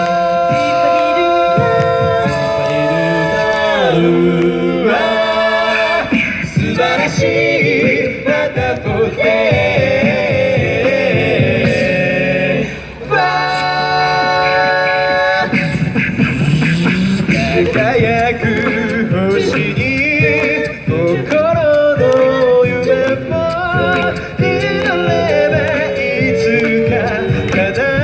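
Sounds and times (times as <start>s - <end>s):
a cappella group singing: 0.0s - 28.0s.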